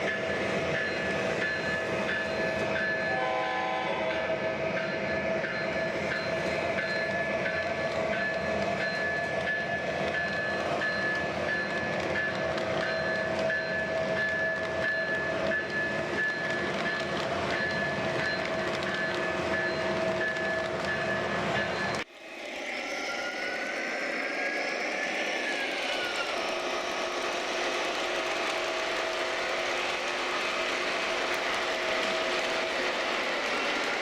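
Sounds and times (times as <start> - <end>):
model train wheels on track: 0.0 - 34.0.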